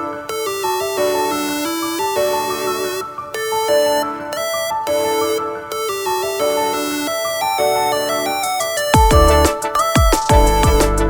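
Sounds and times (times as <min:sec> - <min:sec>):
melodic keyboard line: 0:00.0 - 0:11.0
deep kick drum beat: 0:09.0 - 0:11.0.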